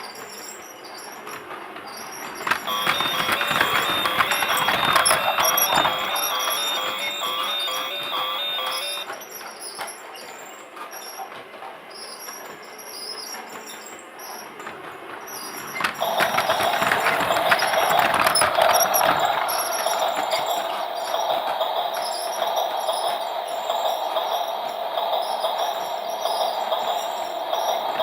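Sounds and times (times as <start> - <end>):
toy train rattling: 1.1 - 9.6, 15.1 - 28.0.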